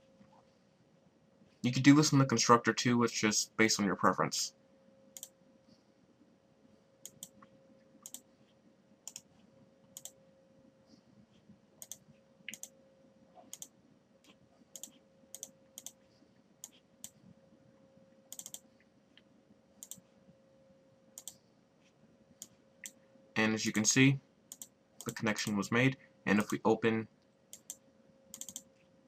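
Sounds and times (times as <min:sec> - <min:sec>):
faint steady hum: 0:00.0 - 0:29.0
computer keyboard clicks: 0:07.0 - 0:07.4, 0:09.1 - 0:09.3, 0:11.8 - 0:12.7, 0:14.8 - 0:16.0, 0:18.3 - 0:18.6, 0:19.8 - 0:20.0, 0:21.2 - 0:21.4, 0:27.5 - 0:28.7.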